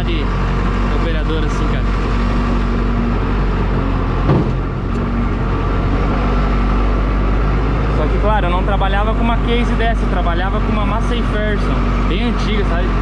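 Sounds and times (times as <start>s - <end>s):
diesel engine running: 0.0s - 13.0s
single clunk: 4.3s - 4.6s.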